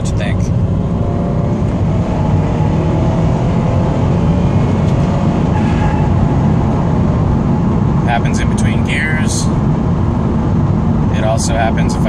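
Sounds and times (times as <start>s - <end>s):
car engine accelerating: 0.0s - 12.0s
faint squeal rising in pitch: 5.5s - 6.7s.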